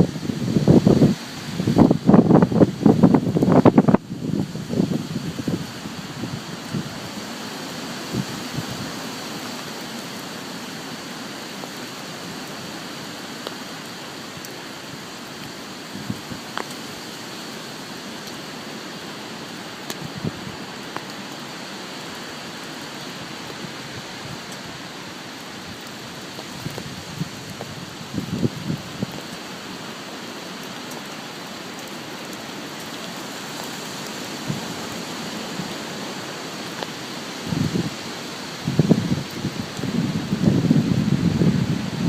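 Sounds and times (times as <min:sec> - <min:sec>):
rain and wind hissing: 0:00.0 - 0:42.0.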